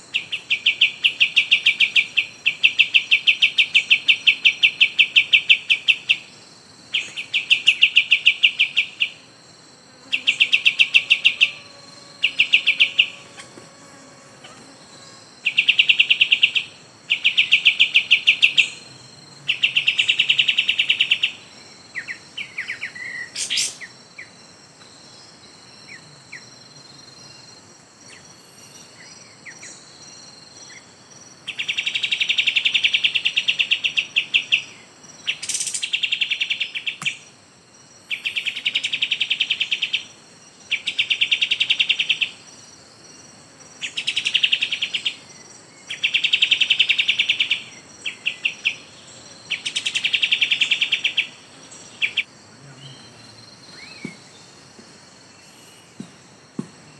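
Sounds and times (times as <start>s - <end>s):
high insect drone: 0.0s - 56.9s.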